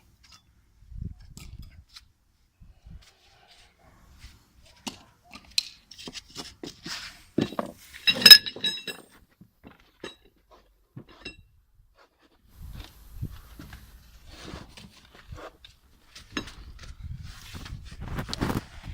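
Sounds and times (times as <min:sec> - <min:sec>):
hard objects clinking and knocking: 0:07.4 - 0:09.1.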